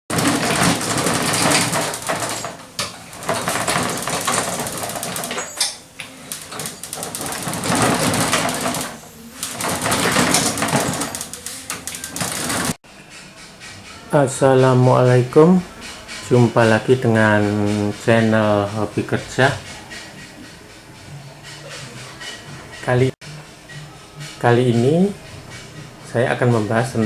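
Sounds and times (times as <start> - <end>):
welding arc crackle: 0.1 - 12.8.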